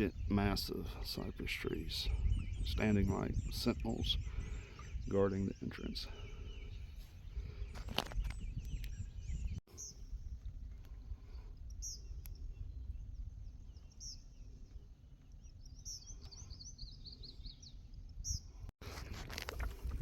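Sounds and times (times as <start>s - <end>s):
wind rumbling on microphone: 0.0s - 20.0s
small bird chirping: 1.2s - 10.1s, 11.6s - 18.6s.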